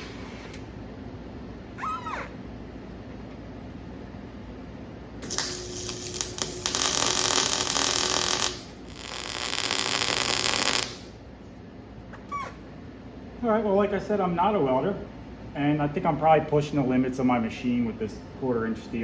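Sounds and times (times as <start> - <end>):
arc welder crackling and sizzling: 5.2 - 11.2.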